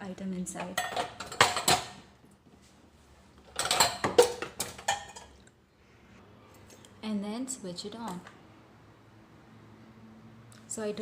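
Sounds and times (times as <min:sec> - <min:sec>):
dishes clattering and clinking: 0:00.6 - 0:02.1, 0:03.4 - 0:05.4.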